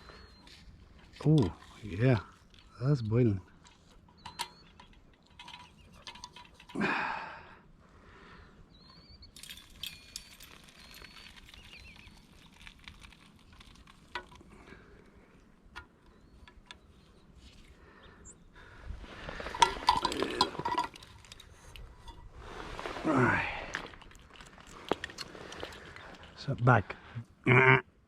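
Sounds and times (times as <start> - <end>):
light clinks: 3.4 - 7.0, 9.2 - 13.2.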